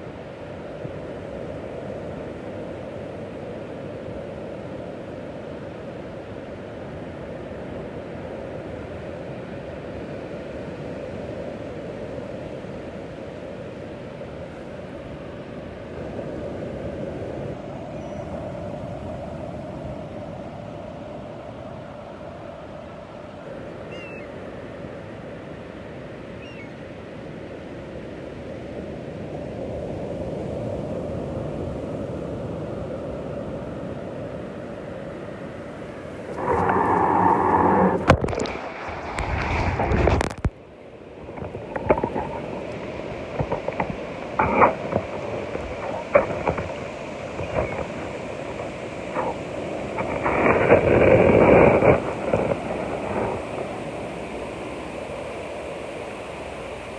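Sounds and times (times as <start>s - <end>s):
ocean waves washing: 0.0s - 56.9s
ocean waves crashing: 29.8s - 56.9s.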